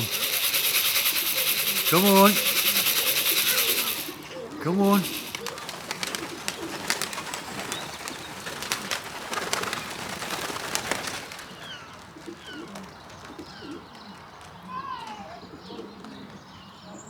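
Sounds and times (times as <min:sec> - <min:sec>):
sharp clicks: 0:00.0 - 0:06.3
pigeons cooing: 0:00.0 - 0:17.0.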